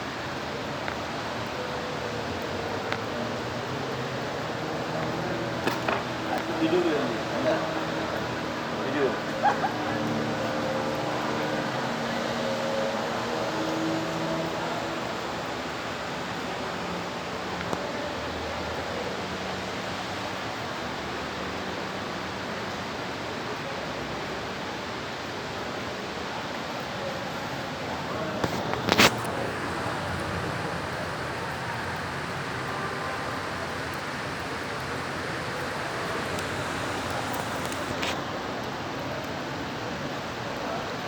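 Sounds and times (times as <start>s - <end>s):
heavy rain hissing: 0.4s - 18.0s, 27.2s - 38.7s.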